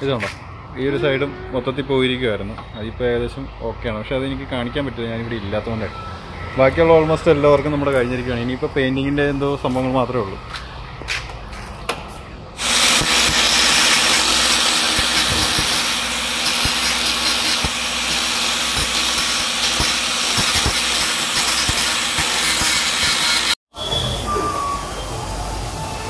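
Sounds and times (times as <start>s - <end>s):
power tool hissing: 12.6s - 23.6s.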